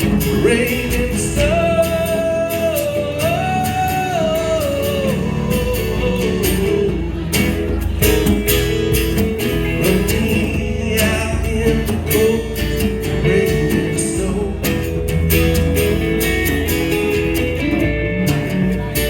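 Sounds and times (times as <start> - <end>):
guitars strumming: 0.0 - 19.0
person singing: 0.2 - 7.3.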